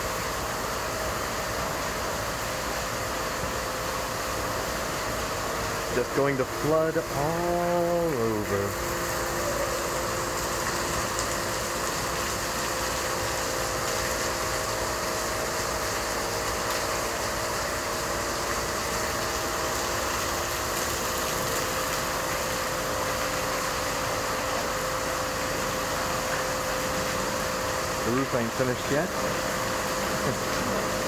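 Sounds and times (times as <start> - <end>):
heavy rain hissing: 5.9 - 12.0.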